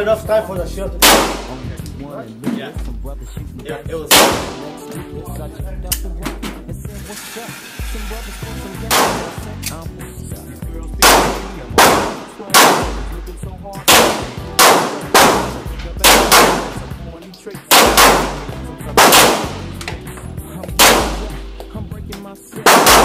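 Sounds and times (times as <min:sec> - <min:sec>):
bass-heavy music: 0:00.0 - 0:23.0
pistol shots: 0:01.0 - 0:01.8, 0:04.1 - 0:04.9, 0:08.9 - 0:09.5, 0:11.0 - 0:13.2, 0:13.8 - 0:16.9, 0:17.7 - 0:19.9, 0:20.8 - 0:21.5, 0:22.6 - 0:23.0.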